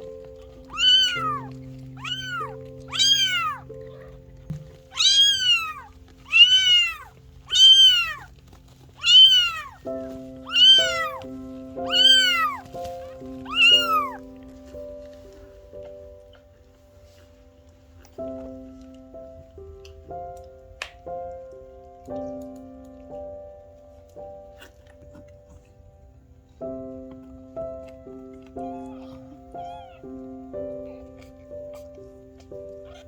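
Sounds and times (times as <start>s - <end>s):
kitten mewing: 0.5s - 8.4s, 9.0s - 9.8s, 10.4s - 11.3s, 11.9s - 14.3s, 28.4s - 30.2s, 30.8s - 33.0s.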